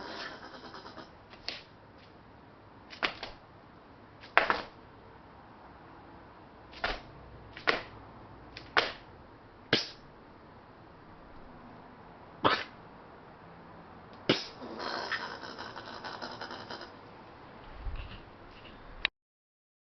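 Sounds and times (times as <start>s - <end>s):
possum coughing hisses: 0.0s - 1.1s, 12.4s - 12.8s, 14.3s - 16.9s
possum rattling chatter: 0.0s - 1.1s, 14.3s - 16.9s.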